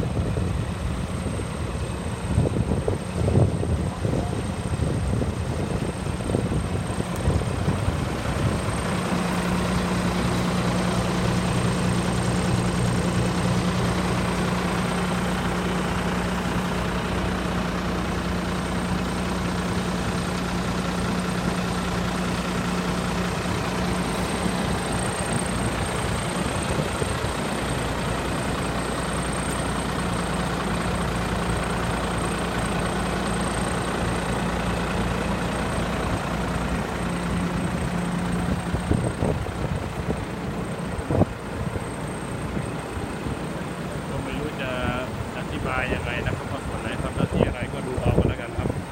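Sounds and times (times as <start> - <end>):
diesel engine idling: 0.0 - 48.9.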